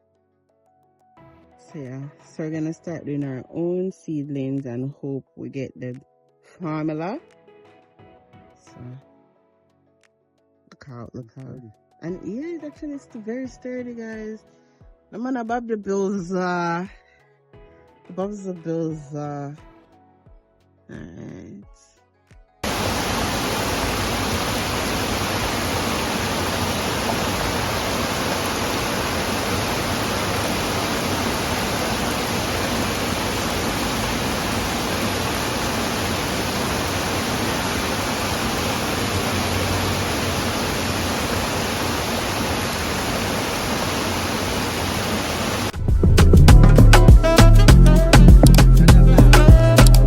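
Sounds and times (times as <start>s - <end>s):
steady rushing noise: 22.6s - 45.7s.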